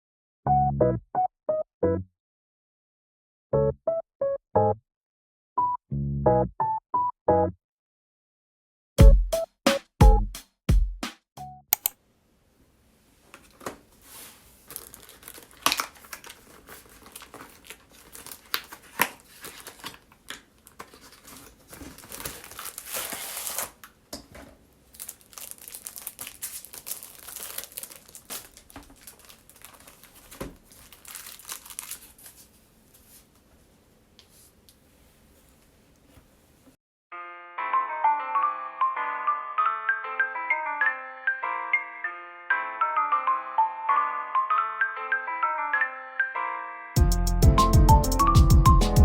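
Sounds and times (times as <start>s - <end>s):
packaging crinkling and tearing: 14.2s - 24.0s, 24.9s - 32.6s.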